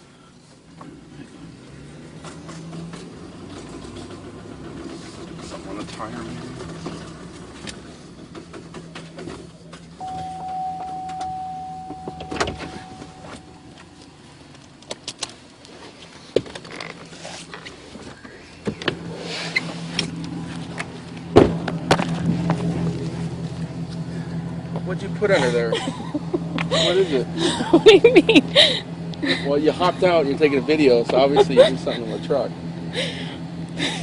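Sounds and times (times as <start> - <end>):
truck engine idling: 7.5 - 16.4, 17.0 - 34.0
steady tone: 10.0 - 14.3.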